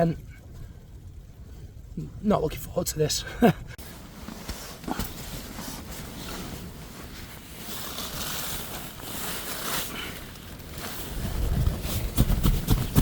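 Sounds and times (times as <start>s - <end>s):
wind buffeting tent fabric: 0.0s - 13.0s.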